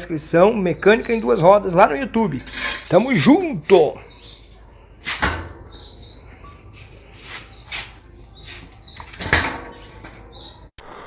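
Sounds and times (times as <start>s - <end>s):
metal parts and tools clinking: 2.3s - 3.5s, 8.8s - 10.5s
short metallic knocks: 8.9s - 10.5s.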